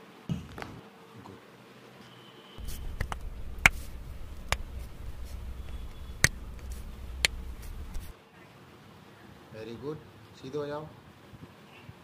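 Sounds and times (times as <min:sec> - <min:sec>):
spinal joints cracking: 0:02.6 - 0:08.1.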